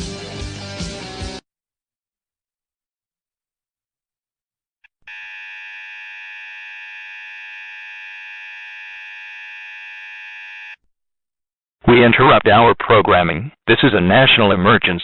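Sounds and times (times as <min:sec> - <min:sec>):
electronic alarm tone: 0:05.1 - 0:10.8.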